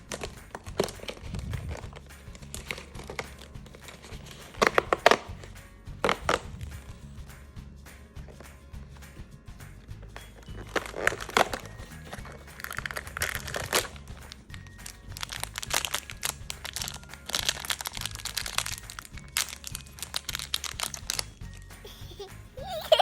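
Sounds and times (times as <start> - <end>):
packaging crinkling and tearing: 0.0 - 5.3, 10.6 - 21.6
children's background music: 0.0 - 23.0.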